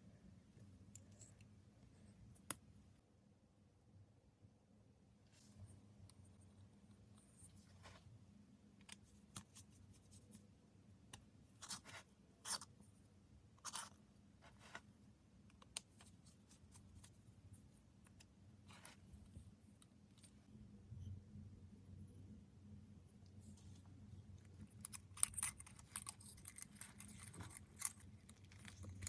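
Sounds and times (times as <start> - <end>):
small objects clicking and scraping: 24.4 - 29.0.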